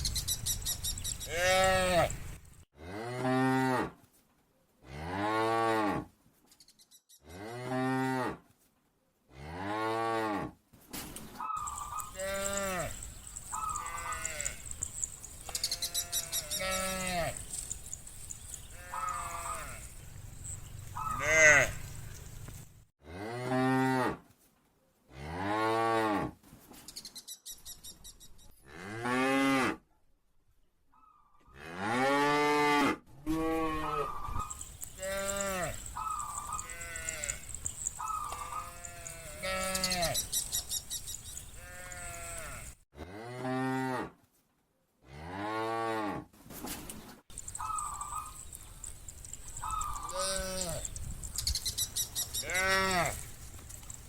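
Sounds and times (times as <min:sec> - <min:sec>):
cattle mooing: 0:01.3 - 0:02.2, 0:11.6 - 0:17.8, 0:18.6 - 0:22.0, 0:31.6 - 0:40.3, 0:41.6 - 0:44.1, 0:52.4 - 0:53.3.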